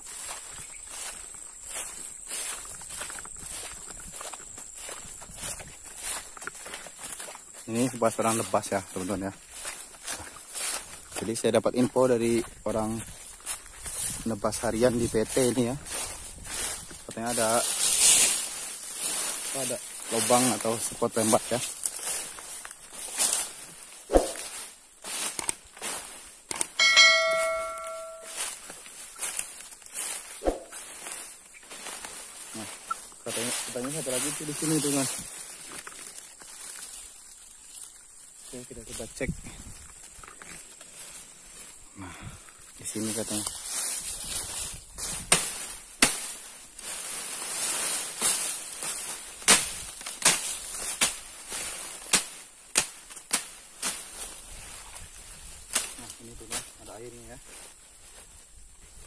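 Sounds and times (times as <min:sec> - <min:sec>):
footsteps through brush: 0:00.0 - 0:59.0
metallic clang ringing: 0:26.8 - 0:28.4.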